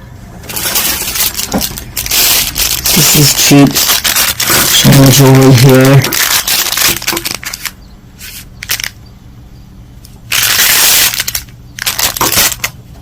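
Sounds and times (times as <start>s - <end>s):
plastic bags crinkling: 0.5s - 7.8s, 8.6s - 9.0s, 10.3s - 12.8s.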